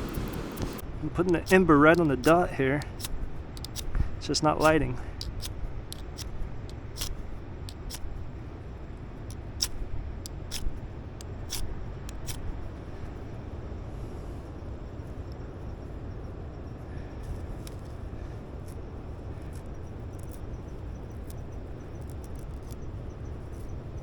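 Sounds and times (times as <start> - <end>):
low rumble: 0.0 - 1.8
flint and steel striking: 0.1 - 8.3, 9.2 - 13.0.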